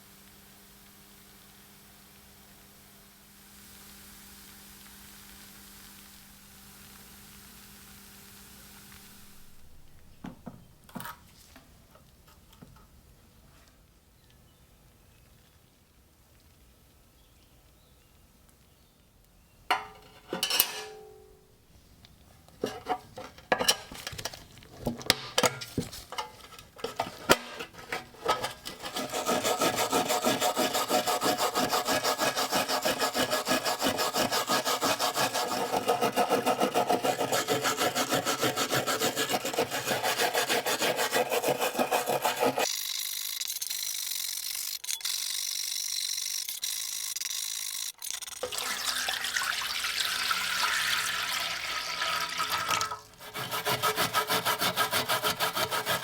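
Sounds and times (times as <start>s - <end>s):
faint high hiss: 0.0s - 24.6s
tools tapping and scraping: 10.1s - 11.3s, 19.7s - 21.4s, 22.6s - 30.1s
hand tool rasping strokes: 25.8s - 48.0s, 53.2s - 56.0s.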